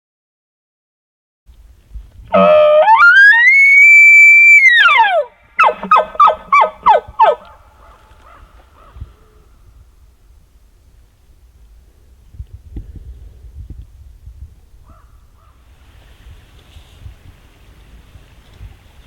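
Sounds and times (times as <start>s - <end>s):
elk bugling whistle: 2.3s - 7.6s.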